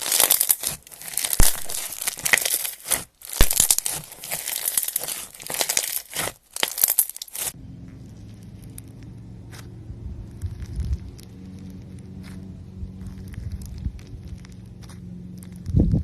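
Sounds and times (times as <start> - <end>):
slime crackling: 0.0 - 7.6
low rumble: 7.5 - 16.0.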